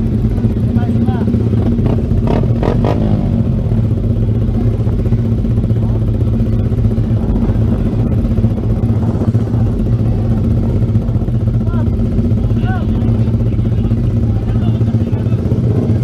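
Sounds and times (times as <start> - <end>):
motorcycle engine running: 0.0 - 16.0
wind noise on microphone: 6.5 - 11.4.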